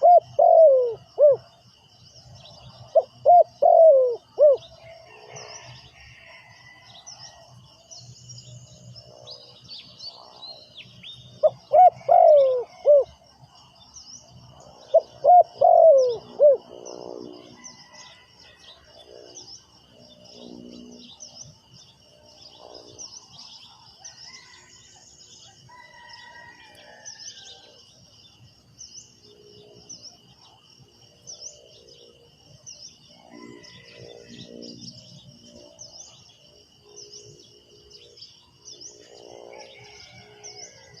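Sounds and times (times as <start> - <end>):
doves cooing: 0.0 - 1.5, 2.8 - 5.4, 11.4 - 13.2, 14.9 - 18.3.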